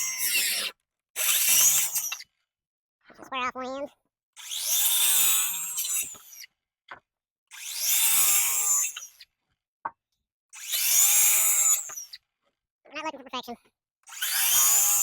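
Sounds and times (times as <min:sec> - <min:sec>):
power saw cutting wood: 0:00.0 - 0:02.2, 0:04.4 - 0:06.4, 0:07.5 - 0:09.1, 0:10.6 - 0:12.0, 0:14.1 - 0:15.0.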